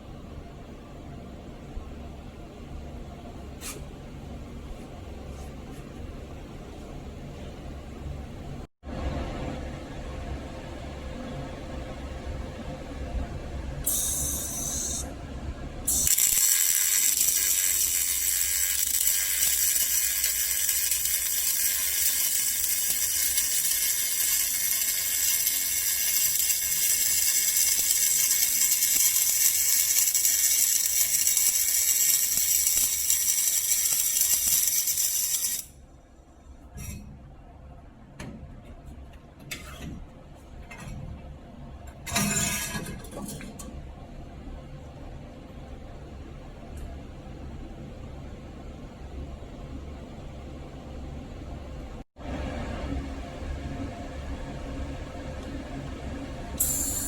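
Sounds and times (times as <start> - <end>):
welding arc hissing: 13.9 - 15.1, 15.9 - 35.8.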